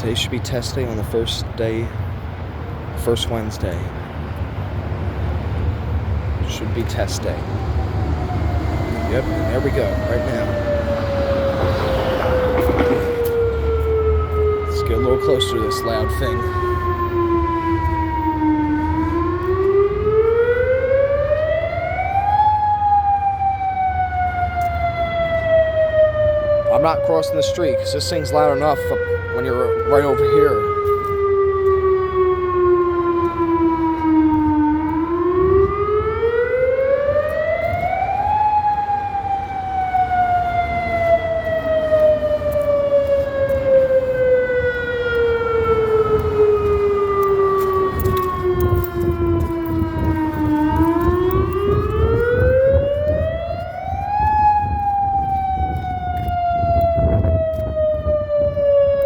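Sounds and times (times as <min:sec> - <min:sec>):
civil defence siren wailing: 0:00.0 - 0:59.0.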